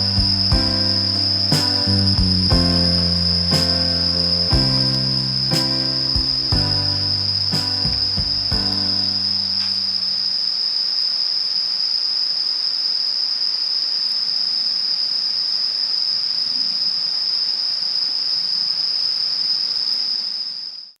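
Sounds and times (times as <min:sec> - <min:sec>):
faint hiss: 0:00.0 - 0:20.8
insects trilling: 0:08.8 - 0:21.0.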